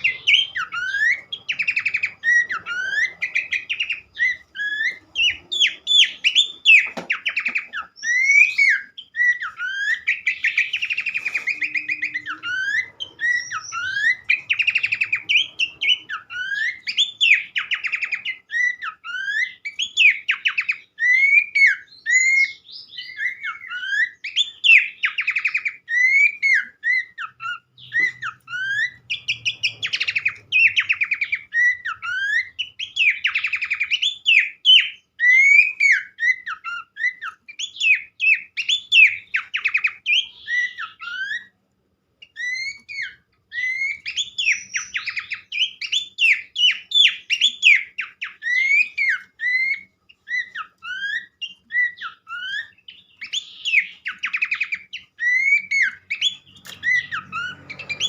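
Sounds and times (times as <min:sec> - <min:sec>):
bird chattering trills: 0:00.0 - 0:19.2
bird singing whistled notes: 0:00.0 - 0:41.6, 0:42.2 - 0:58.0.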